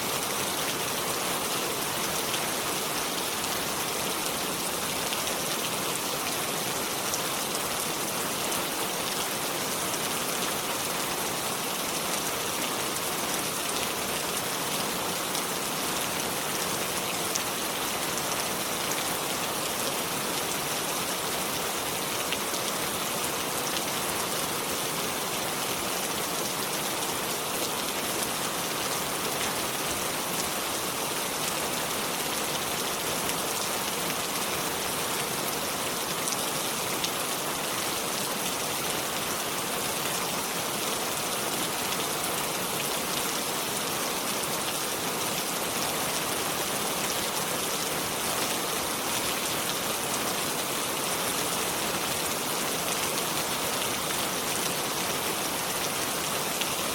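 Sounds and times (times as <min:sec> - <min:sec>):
steady rain falling: 0:00.0 - 0:56.9.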